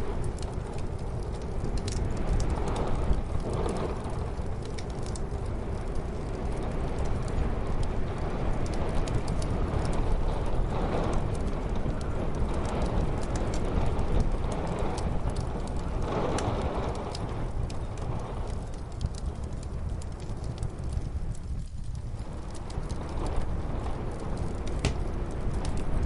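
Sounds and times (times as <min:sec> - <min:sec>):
muffled storm wind: 0:00.0 - 0:26.0
wood fire crackling and popping: 0:00.0 - 0:26.0.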